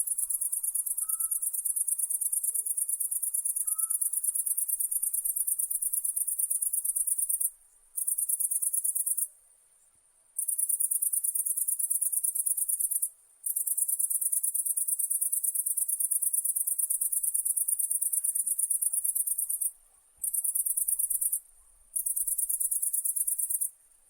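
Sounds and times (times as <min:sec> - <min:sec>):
insect trilling: 0:00.0 - 0:09.2.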